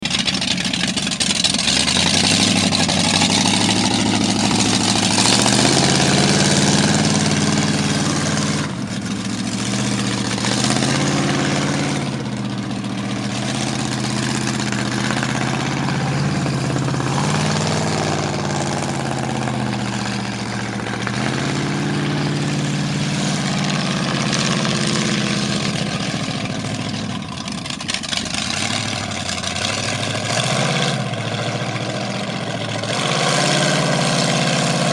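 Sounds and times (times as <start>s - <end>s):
engine revving: 0.0s - 34.9s.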